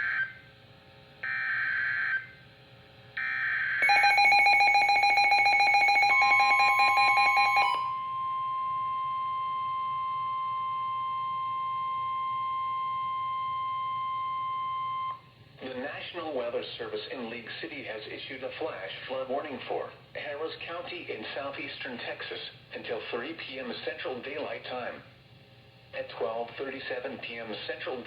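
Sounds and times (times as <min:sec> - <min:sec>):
pulsing two-tone attention signal: 0:03.8 - 0:15.2
steady warning tone: 0:03.8 - 0:15.2.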